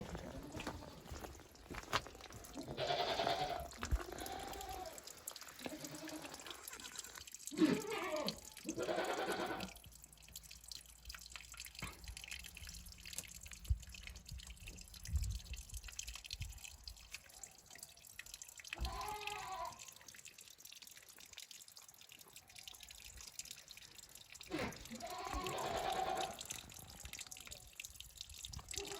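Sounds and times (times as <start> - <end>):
goat bleating: 2.6 - 5.0, 5.6 - 9.8, 18.8 - 19.8, 24.5 - 26.4.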